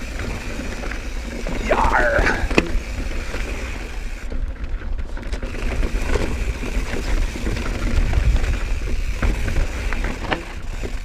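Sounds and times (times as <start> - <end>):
faint bike clicks: 0.0 - 11.0
tyres rolling over dirt: 0.0 - 11.0
wind buffeting microphone: 1.0 - 11.0.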